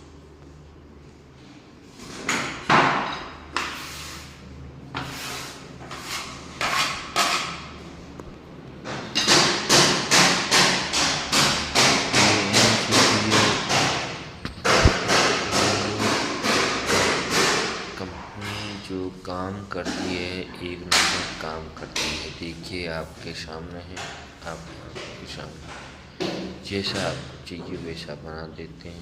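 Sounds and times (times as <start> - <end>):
hammer blows: 9.2 - 17.8.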